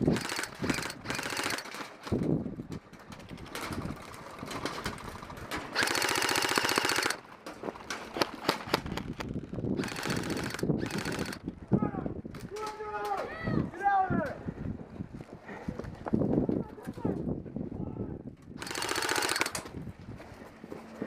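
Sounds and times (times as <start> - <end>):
airsoft rifle full-auto burst: 0.0 - 1.8, 5.8 - 7.2, 9.8 - 11.4, 18.6 - 19.6
single shots and clicks: 18.6 - 19.7.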